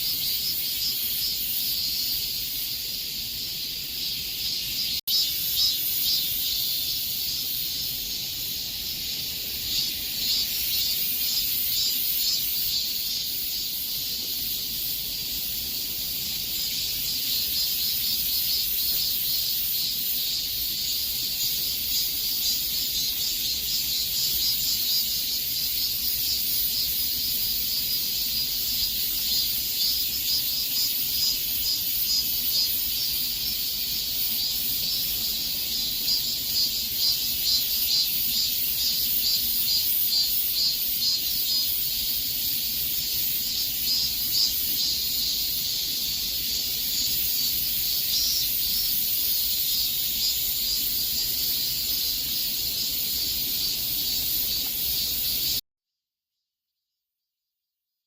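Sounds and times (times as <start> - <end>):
cicadas buzzing: 0.0 - 55.6.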